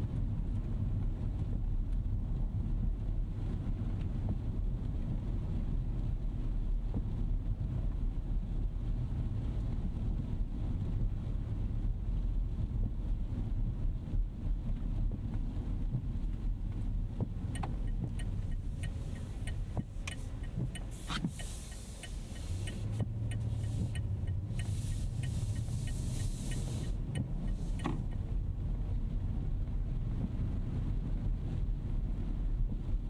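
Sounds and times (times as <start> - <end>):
car road and engine rumble: 0.0 - 33.0
light ticks: 16.2 - 28.3
hiss: 18.8 - 28.0.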